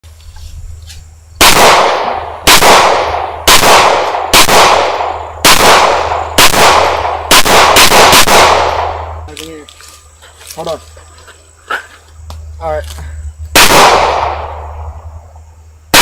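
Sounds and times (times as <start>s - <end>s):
handgun shots echoing: 1.4s - 9.1s.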